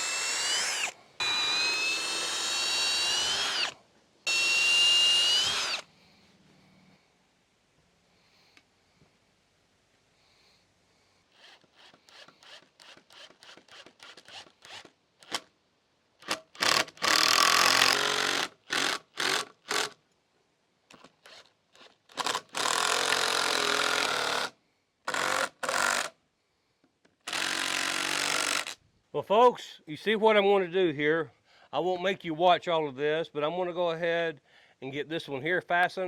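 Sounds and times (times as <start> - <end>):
power drill driving screws: 0.0 - 5.9, 11.4 - 15.5, 16.2 - 20.0, 20.9 - 24.5, 25.1 - 26.1, 27.2 - 28.8.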